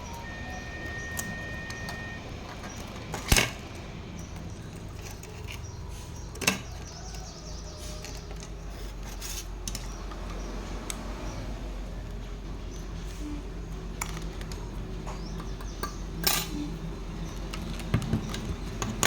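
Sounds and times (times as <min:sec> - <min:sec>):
low steady hum: 0:00.0 - 0:06.6.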